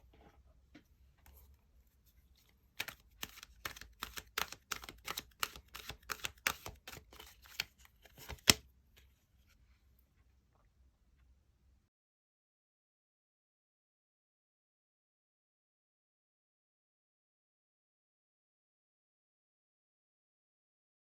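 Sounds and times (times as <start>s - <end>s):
cards being shuffled: 2.4s - 8.7s
louder card tap: 8.2s - 8.6s.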